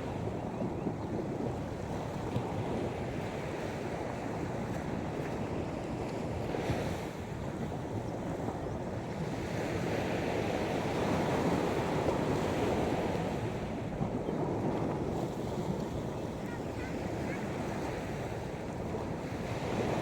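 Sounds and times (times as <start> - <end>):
sea waves washing ashore: 0.0 - 20.0
wind rumble on microphone: 0.0 - 20.0.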